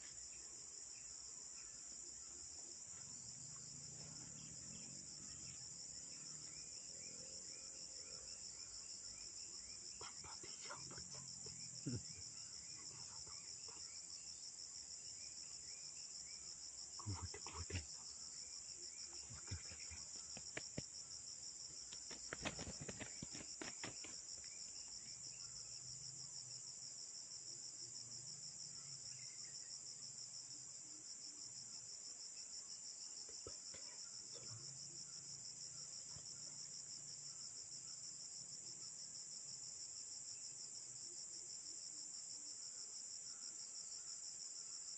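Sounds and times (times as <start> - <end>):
insects trilling: 0.0 - 44.9.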